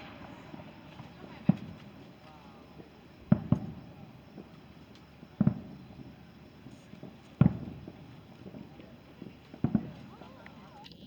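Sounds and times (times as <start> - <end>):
firework shells booming: 0.0 - 4.5, 5.3 - 6.1, 7.0 - 8.6.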